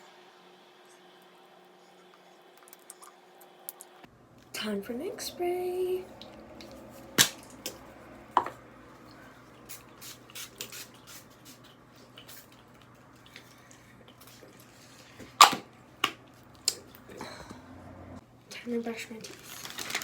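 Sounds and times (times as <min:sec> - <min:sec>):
spray bottle spritzes: 0:09.7 - 0:11.6.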